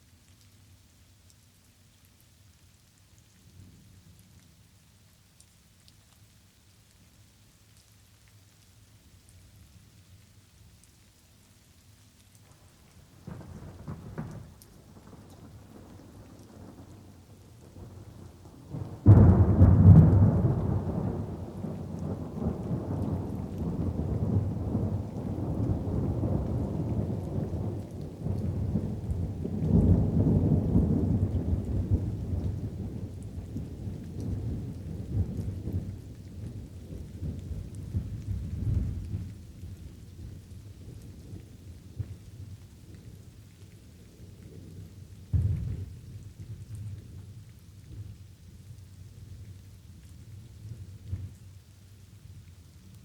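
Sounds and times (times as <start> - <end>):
light rain: 0.0 - 53.0
thunder rolling: 18.8 - 32.9.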